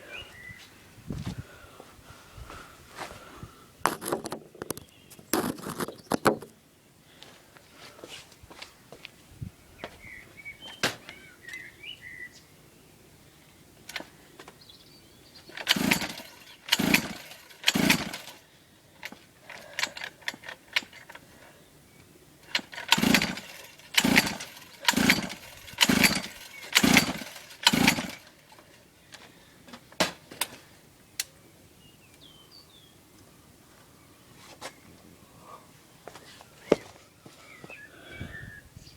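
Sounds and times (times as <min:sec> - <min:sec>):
small engine cranked by hand: 0:15.4 - 0:21.2, 0:22.4 - 0:28.8.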